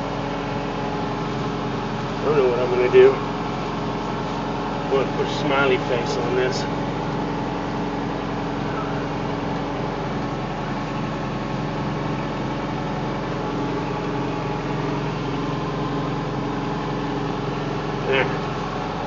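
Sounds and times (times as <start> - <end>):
diesel engine idling: 0.0 - 19.0.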